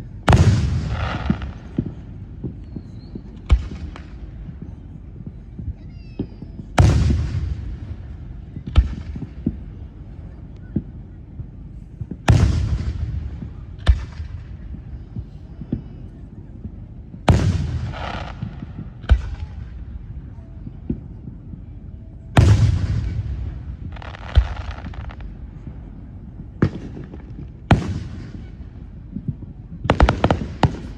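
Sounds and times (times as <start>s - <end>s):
firework booms: 0.0s - 21.7s, 22.3s - 30.9s
sharp firework bangs: 0.3s - 4.4s, 6.2s - 10.9s, 12.0s - 15.9s, 17.2s - 19.8s, 22.4s - 25.7s, 26.5s - 30.9s
small firework pops: 0.3s - 11.0s, 12.0s - 16.0s, 22.4s - 25.8s, 26.4s - 30.9s.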